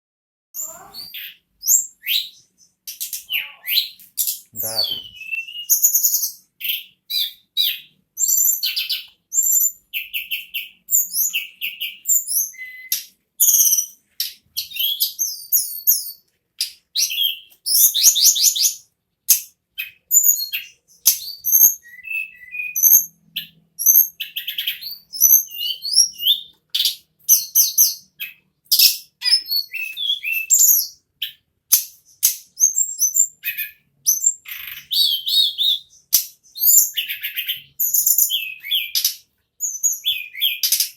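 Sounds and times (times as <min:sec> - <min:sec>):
songbird singing: 0:00.6 - 0:16.2, 0:19.8 - 0:31.4.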